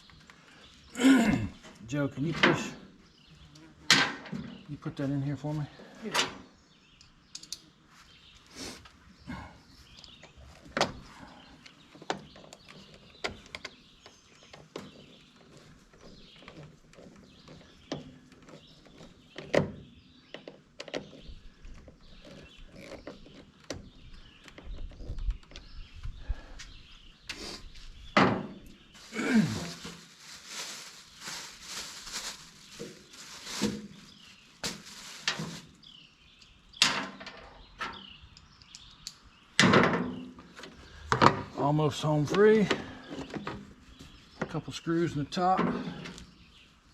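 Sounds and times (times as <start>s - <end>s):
creak: 20.8s - 23.8s
tools and metal parts clunking: 36.8s - 39.0s, 45.4s - 46.4s.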